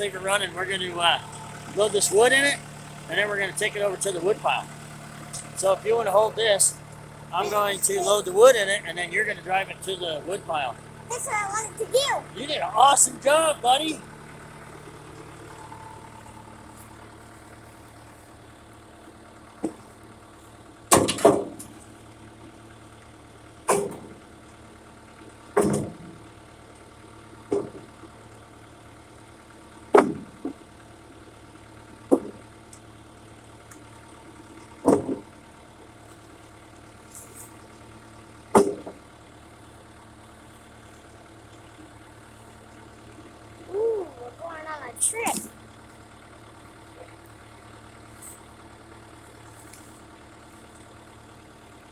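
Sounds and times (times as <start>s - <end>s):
backhoe engine idling: 0.0s - 51.9s
firewood knocking into bucket: 34.8s - 35.3s, 38.6s - 39.0s.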